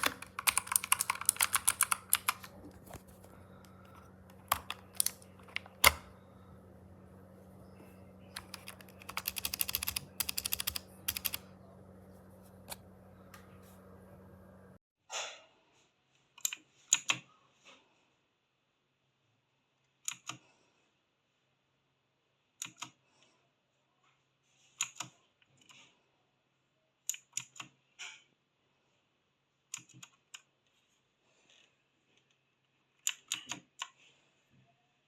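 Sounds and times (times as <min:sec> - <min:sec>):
mechanical keyboard key clicks: 0:00.0 - 0:03.0, 0:04.3 - 0:06.1, 0:08.4 - 0:11.4.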